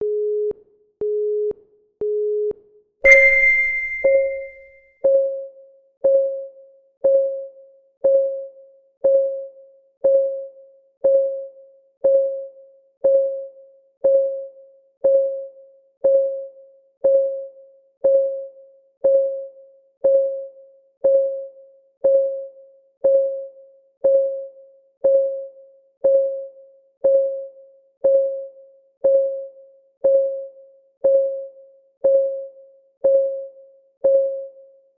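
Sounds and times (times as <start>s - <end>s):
high bell-like ding: 3.1s - 4.6s
short low beeps: 3.1s - 4.6s.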